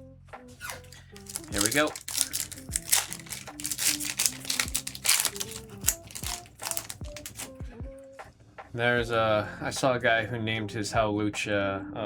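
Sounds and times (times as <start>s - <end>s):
foil wrappers crinkling and tearing: 0.6s - 7.5s.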